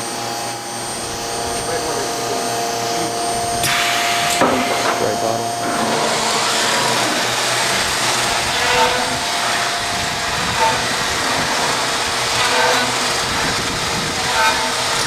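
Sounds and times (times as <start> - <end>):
machine high whine: 0.0 - 15.0
tool cutting wood rushing: 3.6 - 15.0.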